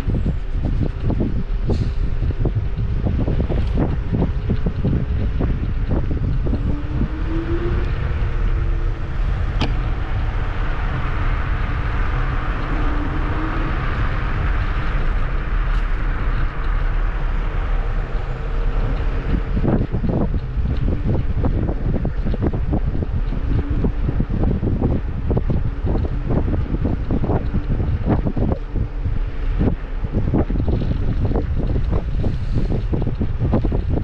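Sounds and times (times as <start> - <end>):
electric scooter rumble: 0.0 - 34.0
wind buffeting microphone: 0.0 - 34.0.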